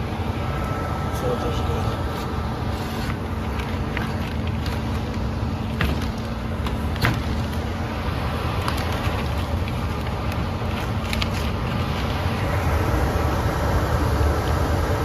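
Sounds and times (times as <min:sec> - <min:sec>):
blower fan rumbling: 0:00.0 - 0:15.0.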